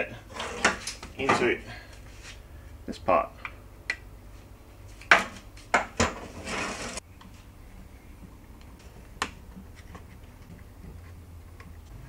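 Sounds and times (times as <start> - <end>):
short scrape: 6.2 - 7.0.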